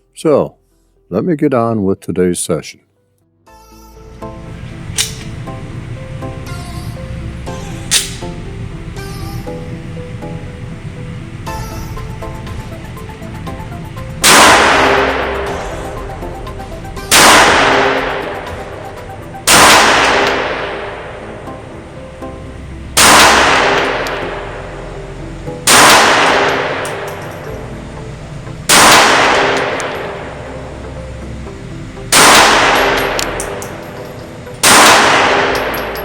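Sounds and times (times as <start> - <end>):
pistol shots: 14.2 - 15.7, 17.1 - 18.7, 19.5 - 20.9, 23.0 - 24.3, 25.7 - 27.5, 28.7 - 30.1, 32.1 - 36.0.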